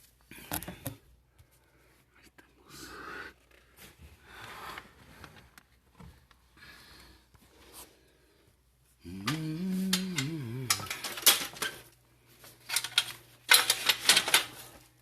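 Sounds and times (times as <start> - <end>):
person breathing: 0.3 - 5.4, 6.5 - 12.6
wavering voice: 9.0 - 11.0.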